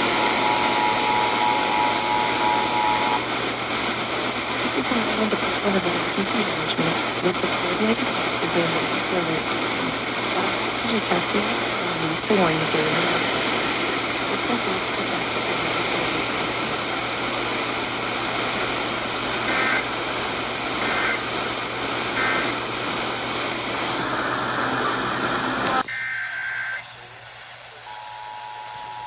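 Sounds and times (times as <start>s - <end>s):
radio static hiss: 0.0s - 29.0s
two-tone attention signal: 0.2s - 3.2s, 27.9s - 29.0s
buzzy data bursts: 4.6s - 16.5s, 19.4s - 19.9s, 20.6s - 21.4s, 22.0s - 26.9s.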